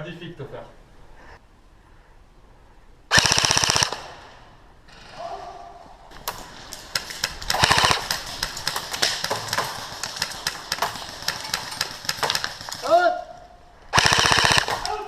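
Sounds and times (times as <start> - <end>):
rapid full-auto burst: 3.1 - 4.3, 6.2 - 13.1, 13.9 - 15.0.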